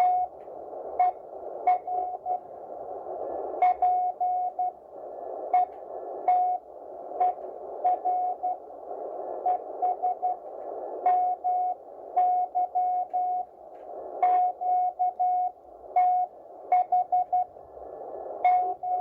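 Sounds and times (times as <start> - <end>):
band noise hiss: 0.0 - 19.0
morse code tone: 1.0 - 2.4, 11.1 - 13.5, 14.2 - 17.6, 18.4 - 19.0.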